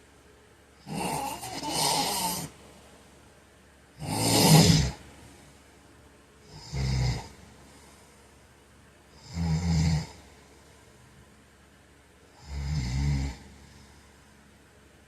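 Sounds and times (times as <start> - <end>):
man snoring: 0.8 - 2.6, 4.0 - 5.0, 6.4 - 7.4, 9.1 - 10.3, 12.4 - 13.9.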